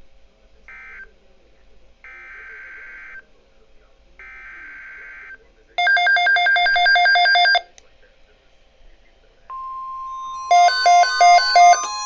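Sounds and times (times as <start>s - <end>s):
steady electronic tone: 9.5s - 12.0s
synthesized beeps: 9.5s - 12.0s
warbling two-tone alert: 9.5s - 12.0s.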